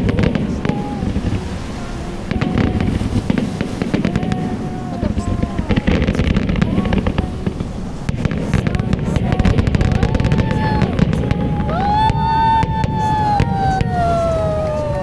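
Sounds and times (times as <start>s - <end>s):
fireworks bangs and crackling: 0.0s - 15.0s.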